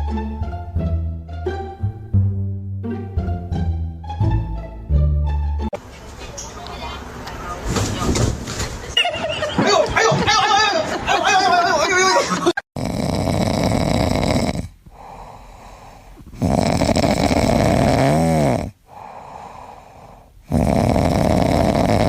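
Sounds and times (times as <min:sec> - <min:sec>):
loud snoring: 0:12.8 - 0:22.0.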